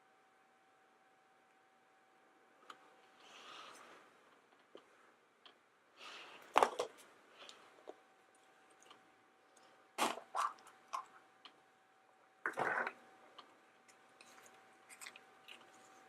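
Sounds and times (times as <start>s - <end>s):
faint steady tone: 0.0s - 10.0s.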